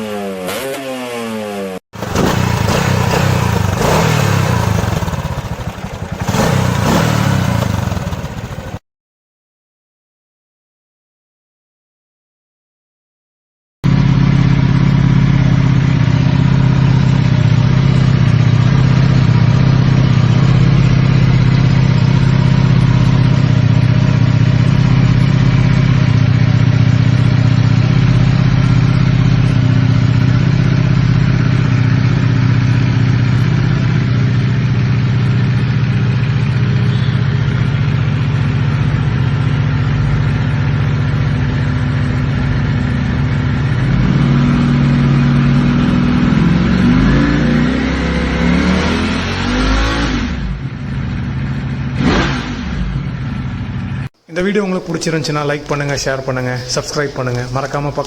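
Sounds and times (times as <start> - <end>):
motorcycle engine idling: 2.0 - 8.8, 13.9 - 47.1, 50.4 - 54.1.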